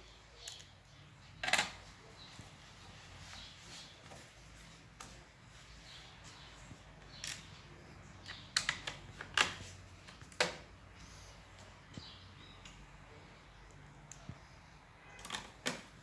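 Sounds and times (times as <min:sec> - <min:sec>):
laptop parts clicking: 0:07.0 - 0:10.8, 0:15.1 - 0:16.0.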